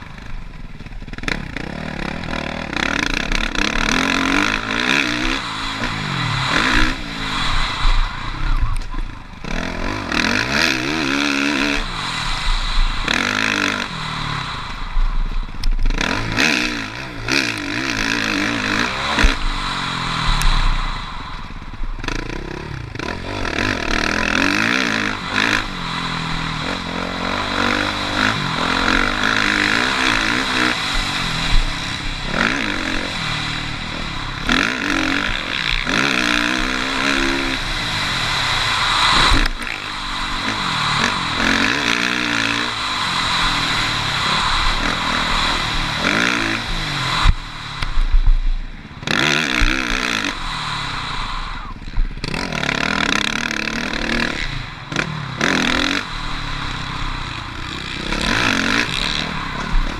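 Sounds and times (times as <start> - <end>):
motocross bike engine revving: 0.0 - 59.9
wind rushing: 35.9 - 48.7.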